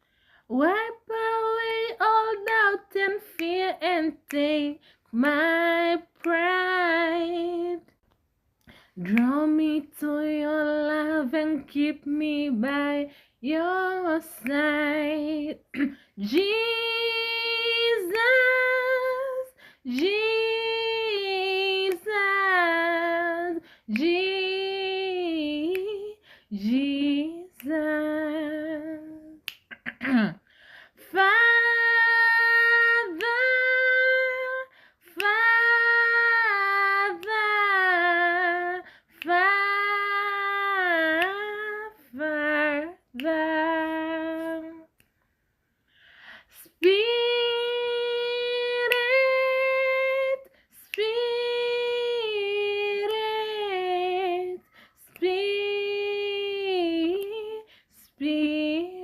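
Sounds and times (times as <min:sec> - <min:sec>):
breath: 0:00.0 - 0:00.5, 0:08.6 - 0:09.0, 0:19.5 - 0:19.9, 0:26.2 - 0:26.5, 0:30.4 - 0:31.0, 0:34.7 - 0:35.0, 0:45.8 - 0:46.6, 0:54.6 - 0:55.0, 0:57.7 - 0:58.0
woman breathing: 0:00.0 - 0:00.5, 0:30.4 - 0:31.0, 0:45.8 - 0:46.6
woman singing unaccompanied: 0:00.5 - 0:08.0, 0:09.0 - 0:30.4, 0:31.0 - 0:45.0, 0:46.6 - 0:59.0.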